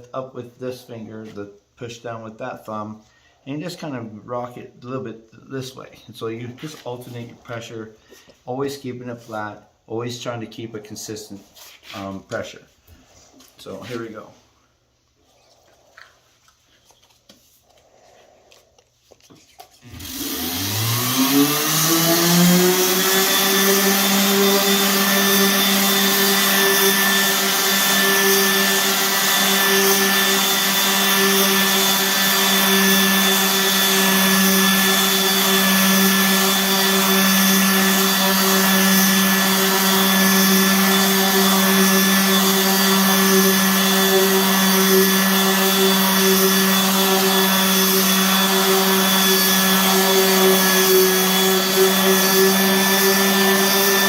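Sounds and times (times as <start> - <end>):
electric sander on wood: 19.7 - 54.0.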